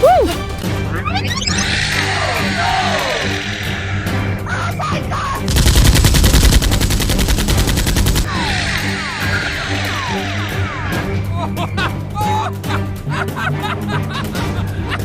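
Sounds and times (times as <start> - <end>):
machine-gun fire: 5.5 - 8.3.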